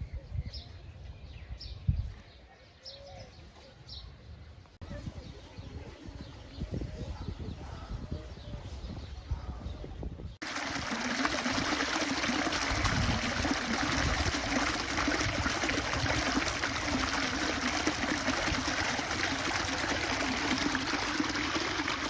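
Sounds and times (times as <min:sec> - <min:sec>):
water trickling and splashing: 0:10.4 - 0:22.0.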